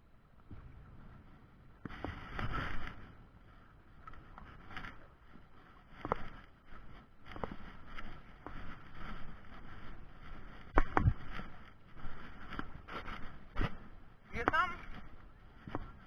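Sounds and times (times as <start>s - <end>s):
wind buffeting microphone: 5.2s - 16.0s.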